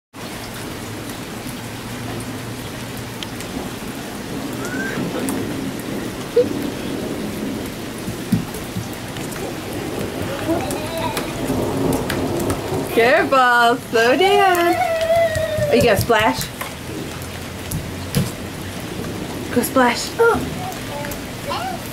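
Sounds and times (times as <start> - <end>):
steady rain falling: 0.1 - 21.9.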